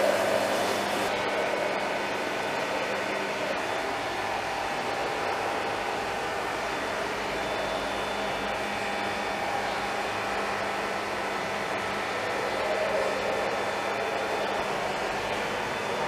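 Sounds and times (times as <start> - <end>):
faint steady tones: 0.0 - 16.0
machine hum and hiss: 0.0 - 16.0.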